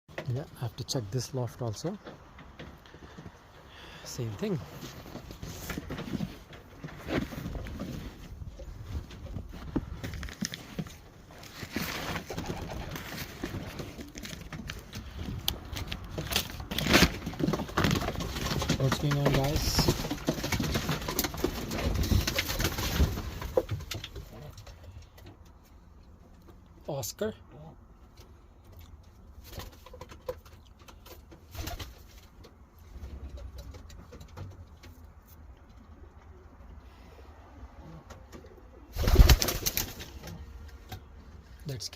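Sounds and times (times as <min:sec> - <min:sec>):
clicks and scuffling: 0:01.6 - 0:26.8
pigeons cooing: 0:12.2 - 0:14.2.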